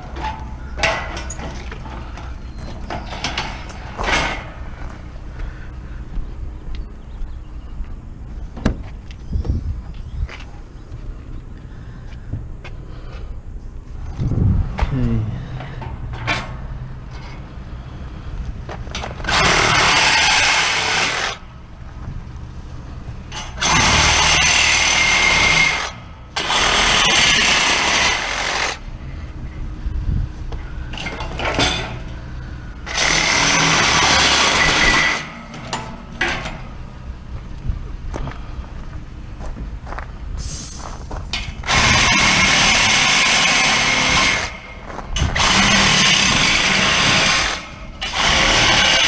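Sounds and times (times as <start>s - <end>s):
power tool cutting metal: 19.2s - 21.4s, 23.3s - 28.8s, 32.8s - 35.8s, 41.6s - 49.0s
sharp metal knocks: 30.9s - 32.1s.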